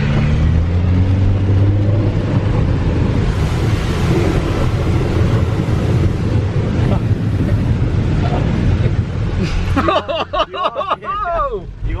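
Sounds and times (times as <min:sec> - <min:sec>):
car engine pulling under load: 0:00.0 - 0:10.4
hiss of water from tyres: 0:02.2 - 0:10.0.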